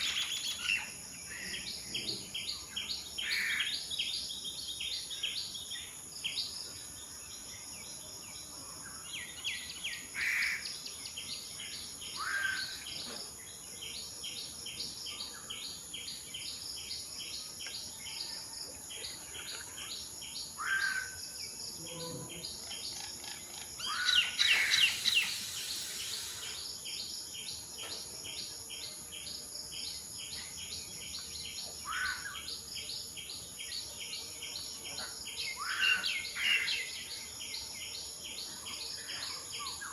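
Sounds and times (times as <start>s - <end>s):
high-pitched insect drone: 20.6s - 27.7s.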